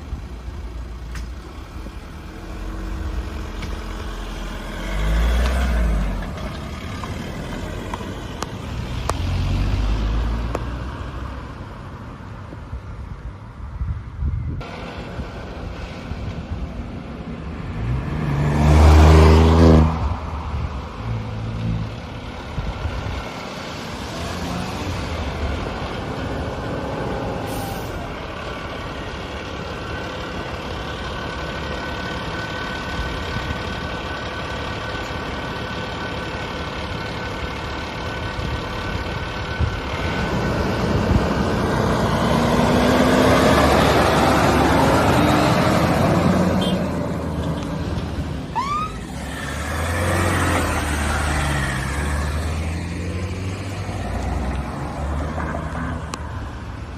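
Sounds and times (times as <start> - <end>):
diesel engines running: 0.0 - 56.9
vehicle accelerating past: 4.0 - 7.9, 8.7 - 11.4, 17.7 - 20.2, 40.0 - 47.4, 49.2 - 56.2.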